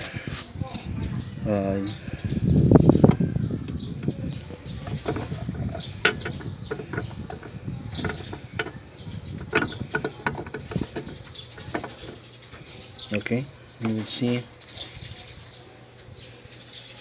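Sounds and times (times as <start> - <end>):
headlight bulb clicking and rattling: 3.0 - 12.7.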